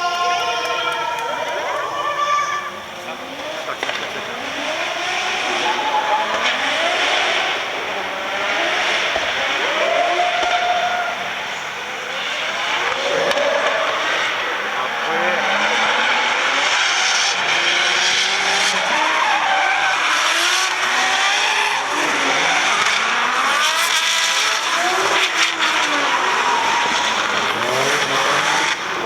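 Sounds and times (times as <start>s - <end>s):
car engines revving: 0.0s - 29.0s
tyres squealing: 0.0s - 29.0s.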